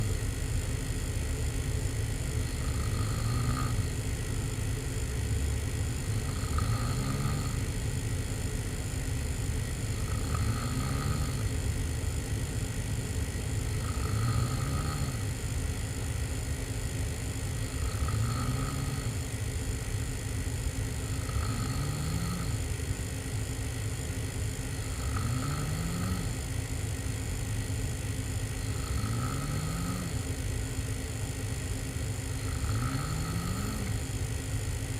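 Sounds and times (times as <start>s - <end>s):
person snoring: 0.0s - 12.3s, 13.6s - 16.1s, 17.5s - 20.3s, 20.9s - 22.8s, 24.6s - 26.8s, 28.3s - 30.4s, 32.3s - 34.2s.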